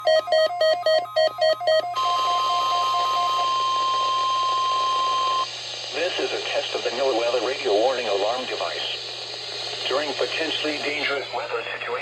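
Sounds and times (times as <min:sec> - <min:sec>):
rapid electronic beeps: 0:00.0 - 0:03.6
weather radio alarm tone: 0:00.0 - 0:05.5
radio broadcast: 0:05.9 - 0:12.0.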